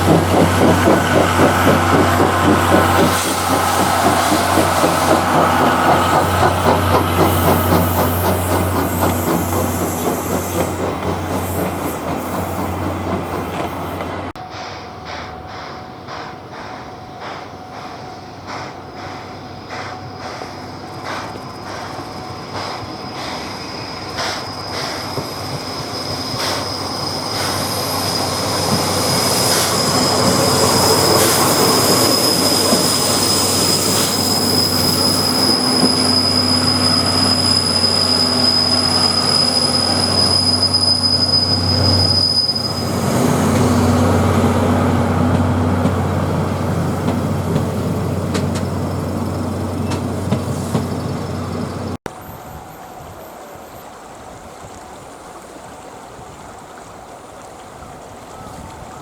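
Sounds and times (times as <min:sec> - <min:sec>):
steam train rumble: 0:00.0 - 0:55.1
high-pitched wheel squeal: 0:21.6 - 0:44.8.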